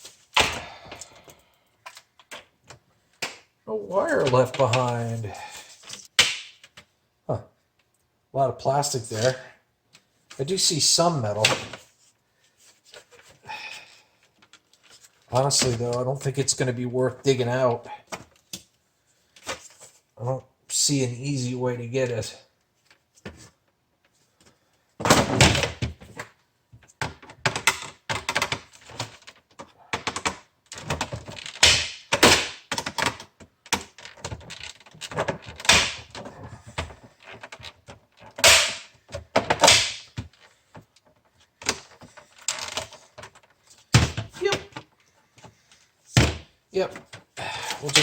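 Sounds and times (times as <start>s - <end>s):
hard plastic parts knocking and rattling: 24.4s - 48.0s.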